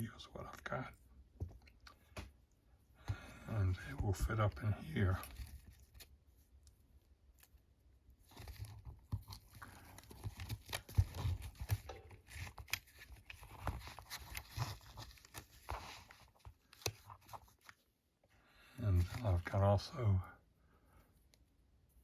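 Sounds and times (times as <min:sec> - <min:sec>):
tools rustling in fabric wallet: 0:08.2 - 0:17.9.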